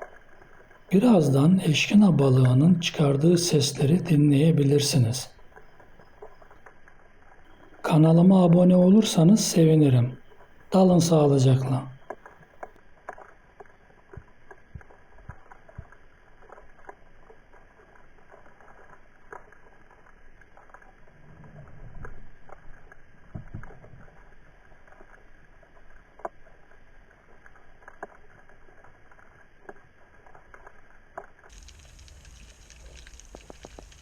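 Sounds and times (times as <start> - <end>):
fish knocks and clicks: 12.0 - 34.0.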